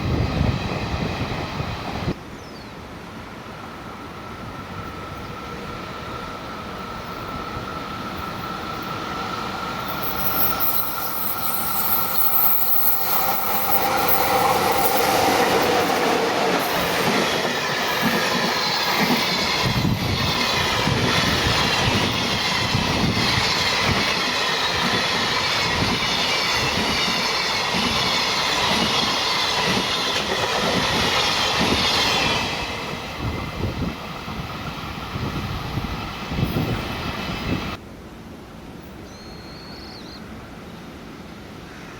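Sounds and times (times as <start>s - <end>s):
locomotive whine: 4.0s - 37.8s
steel on rail hiss: 8.2s - 15.9s.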